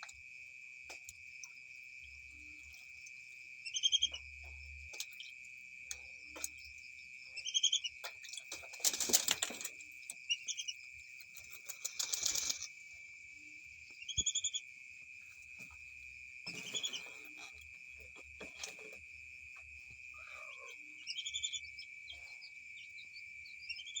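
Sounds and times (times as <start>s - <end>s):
high insect drone: 0.0s - 24.0s
ducks splashing and flapping: 8.0s - 10.7s, 11.3s - 12.7s, 16.5s - 17.5s.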